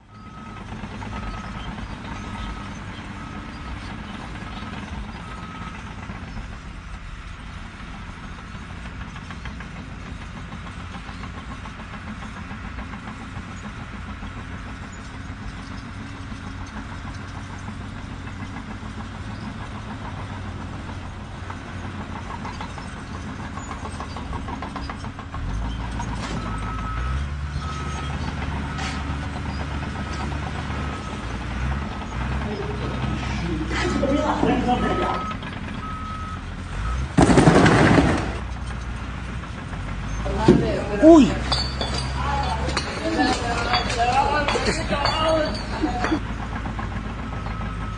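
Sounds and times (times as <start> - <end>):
construction machine engine running: 0.0 - 47.9
beeping alarm: 34.4 - 37.0.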